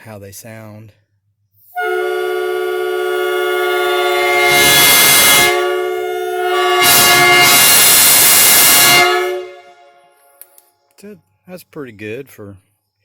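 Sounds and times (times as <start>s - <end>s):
air horn chord blast: 1.7s - 10.2s.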